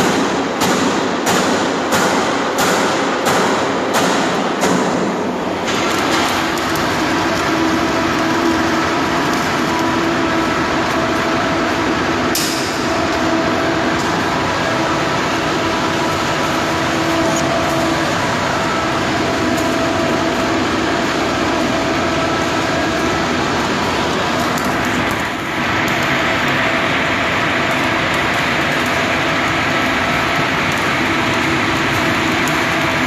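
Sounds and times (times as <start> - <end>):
metal striking steel tank: 0.0 - 23.2
steady dense noise with hum: 0.0 - 33.0.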